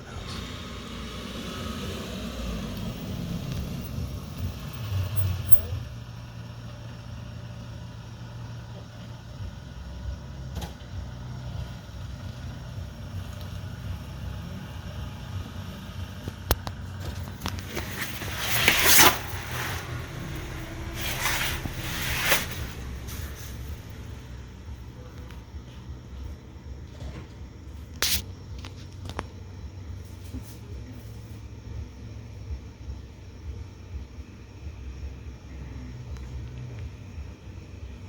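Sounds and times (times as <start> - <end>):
car engine running: 0.0 - 30.1
rushing noises: 16.4 - 24.5
sharp click: 28.0 - 28.2.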